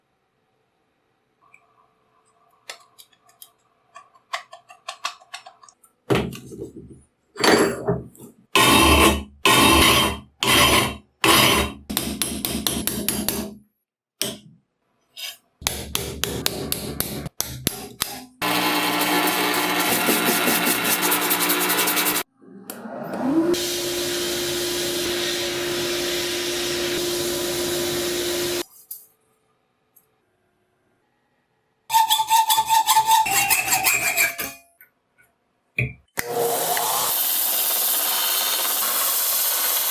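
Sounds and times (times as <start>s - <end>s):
power tool motor whining: 18.4s - 22.2s, 23.2s - 28.6s.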